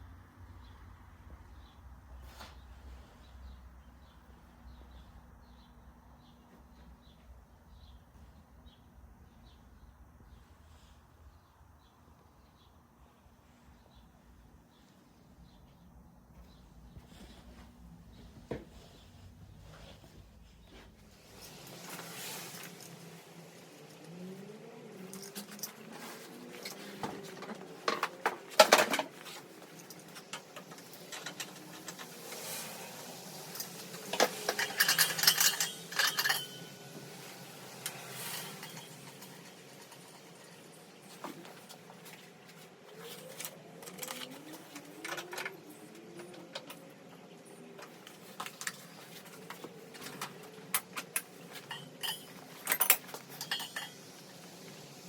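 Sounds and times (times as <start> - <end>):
small metal parts clinking: 24.9 - 37.0, 37.8 - 41.2, 48.3 - 54.4.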